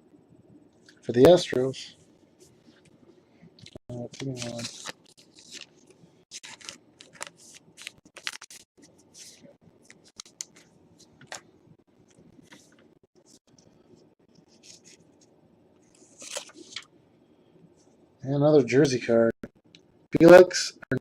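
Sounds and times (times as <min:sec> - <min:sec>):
cards and wrappers rustling: 0:03.6 - 0:13.4, 0:15.9 - 0:16.9.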